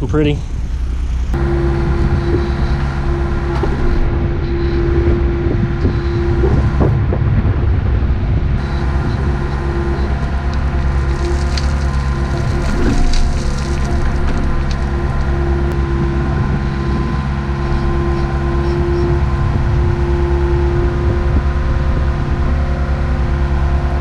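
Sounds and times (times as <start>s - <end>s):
excavator engine running: 0.0s - 24.0s
dirt and rock crunching: 8.6s - 16.0s.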